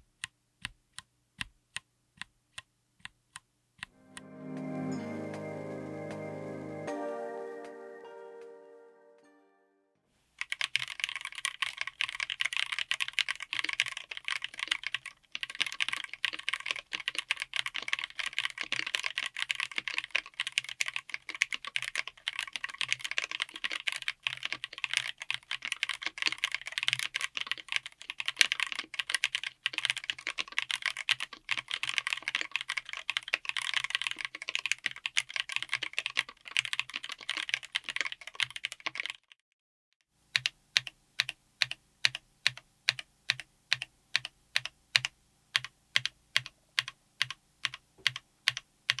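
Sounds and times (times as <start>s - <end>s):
mechanical keyboard typing: 10.4s - 39.3s, 40.3s - 49.0s.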